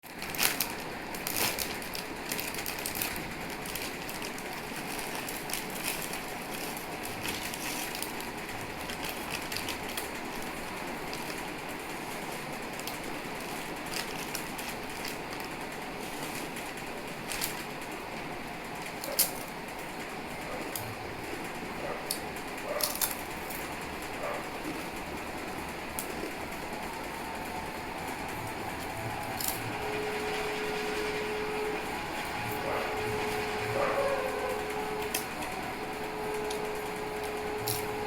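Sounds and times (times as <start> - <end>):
potato chips crunching: 0.1 - 11.4.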